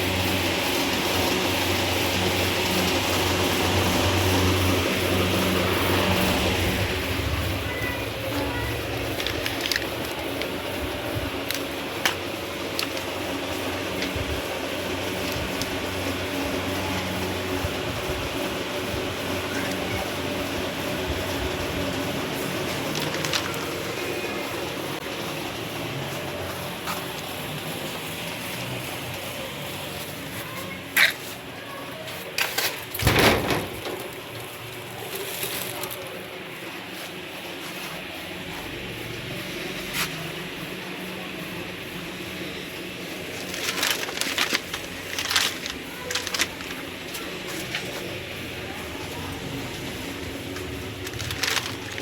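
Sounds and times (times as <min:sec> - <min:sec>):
steady machine hum: 0:00.0 - 0:52.0
clatter: 0:50.6 - 0:52.0.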